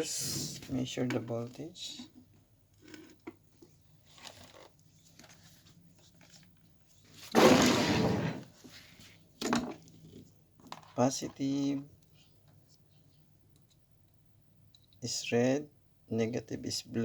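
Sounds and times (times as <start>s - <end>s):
loud scraping rustle: 7.2s - 9.1s.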